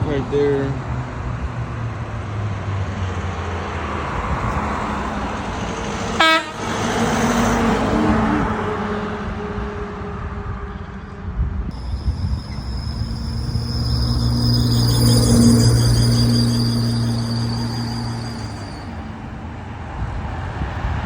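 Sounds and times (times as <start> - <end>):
truck horn beep: 6.2 - 6.7
truck driving past: 11.7 - 19.5.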